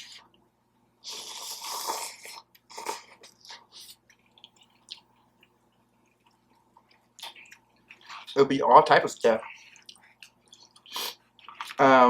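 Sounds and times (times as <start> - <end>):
chewing and wet mouth smacks: 1.5 - 8.4, 9.4 - 11.8.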